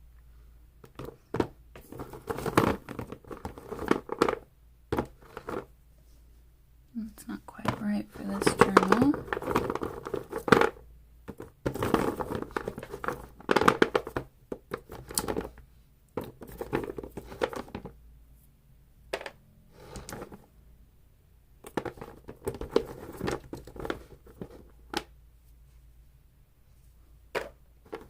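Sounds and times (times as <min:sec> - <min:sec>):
paper and packaging crinkling: 0:07.5 - 0:15.6.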